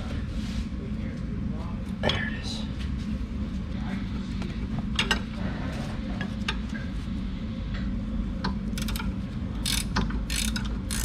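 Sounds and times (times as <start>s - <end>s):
low background hum: 0.0s - 11.0s
wrench clicking on metal: 8.8s - 11.0s.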